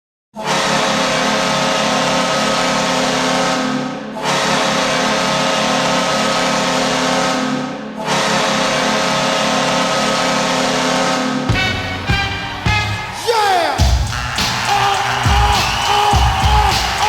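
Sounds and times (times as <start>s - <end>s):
hockey goal horn blasts: 11.5s - 17.0s.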